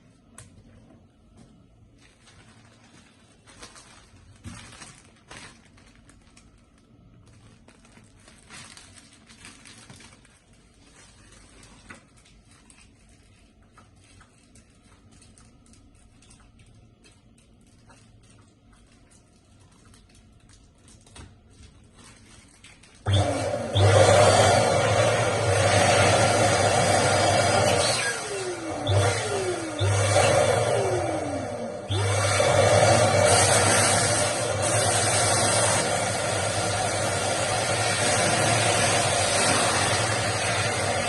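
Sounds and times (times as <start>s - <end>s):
balloons rubbing and crinkling: 1.9s - 15.5s
loud whirring with low hum: 23.0s - 41.0s.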